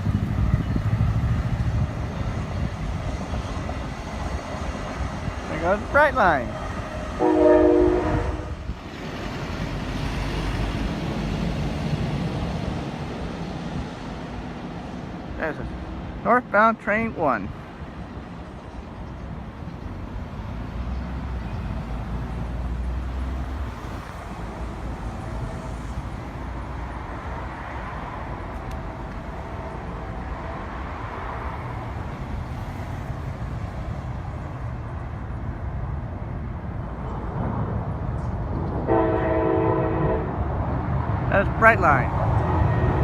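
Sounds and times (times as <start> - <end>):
vehicle rumble and road noise: 0.0 - 43.0
train horn: 7.1 - 8.6, 38.9 - 40.4, 42.4 - 43.0.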